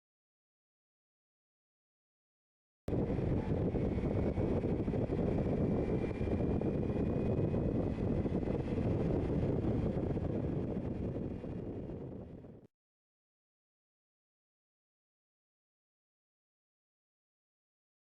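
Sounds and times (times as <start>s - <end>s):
wind rushing over microphone: 2.9s - 12.7s.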